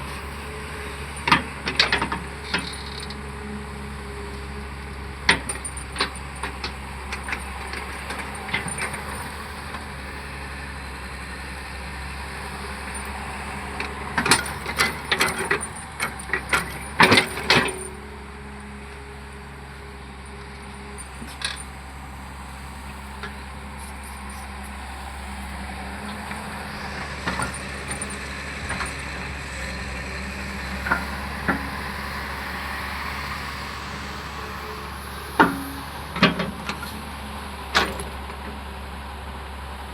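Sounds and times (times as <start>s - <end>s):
excavator diesel engine: 0.0s - 39.9s
metallic clanks and knocks: 13.8s - 18.0s, 27.0s - 31.9s.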